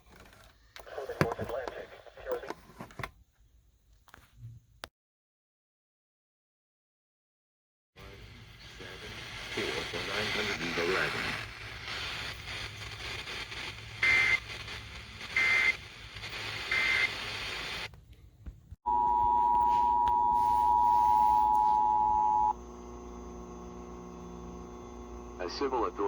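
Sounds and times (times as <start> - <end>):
broadcast hiss: 0.8 - 3.1, 8.0 - 17.9, 18.9 - 22.6, 24.5 - 26.0
two-tone attention signal: 18.9 - 22.6.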